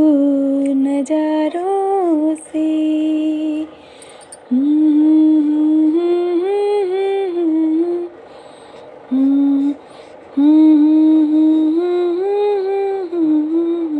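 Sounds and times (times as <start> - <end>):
woman humming a lullaby: 9.1 - 9.8, 10.4 - 13.9.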